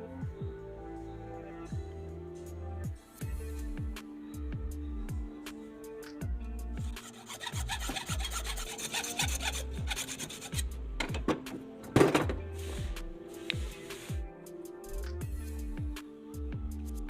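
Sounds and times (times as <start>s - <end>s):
electronic music with thudding beat: 2.9s - 17.0s
rasping file strokes: 6.8s - 10.8s.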